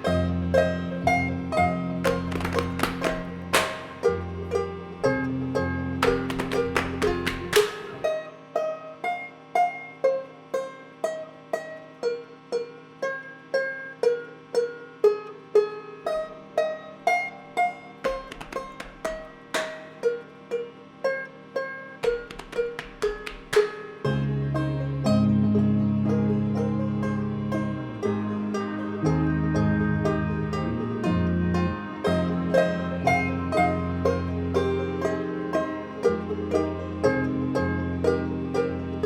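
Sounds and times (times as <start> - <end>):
plucked string notes: 0.0 - 39.0
held low tone: 24.1 - 39.0.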